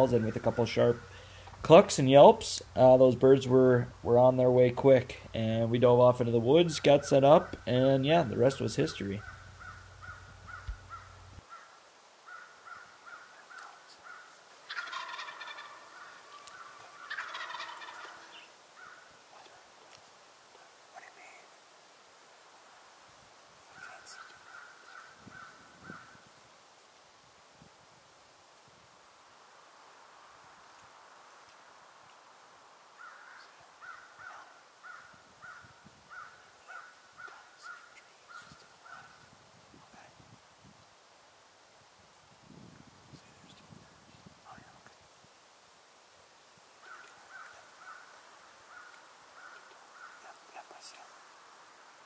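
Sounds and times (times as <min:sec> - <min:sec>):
turkey gobbling: 0:06.7 - 0:07.7, 0:12.3 - 0:19.0
turkey yelps: 0:12.3 - 0:19.0.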